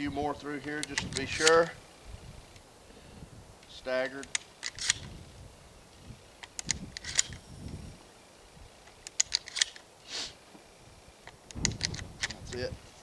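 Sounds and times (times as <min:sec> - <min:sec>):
shotgun shells loading clicks: 0:00.7 - 0:01.8, 0:04.2 - 0:05.1, 0:06.4 - 0:07.4, 0:08.8 - 0:09.9, 0:11.2 - 0:12.6
short sliding hiss: 0:09.5 - 0:10.5.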